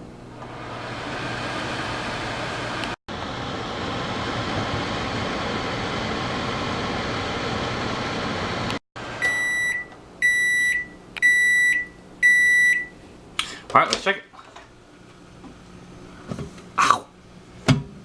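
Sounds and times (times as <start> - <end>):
microwave oven humming: 0.0 - 13.3
microwave beeps: 9.2 - 13.0.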